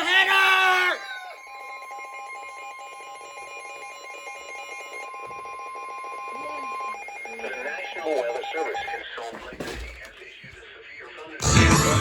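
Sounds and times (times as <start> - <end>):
steady warning alarm tone: 1.0 - 9.2.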